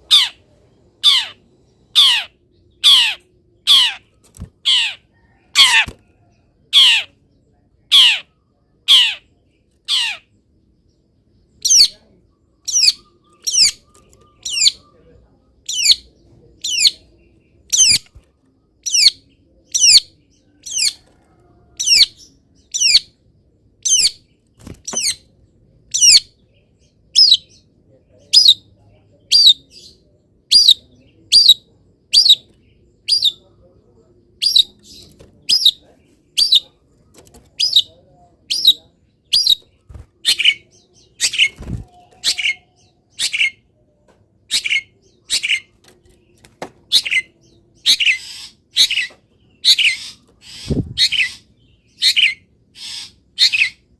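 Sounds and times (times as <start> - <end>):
bird giving harsh calls: 0.0 - 0.4, 1.0 - 6.0, 6.7 - 7.2, 7.9 - 8.3, 8.9 - 10.3, 46.9 - 53.8.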